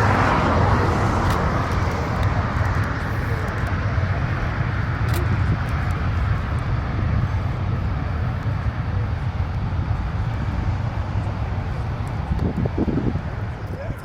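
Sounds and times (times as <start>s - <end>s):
aircraft engine rumble: 0.0s - 14.0s.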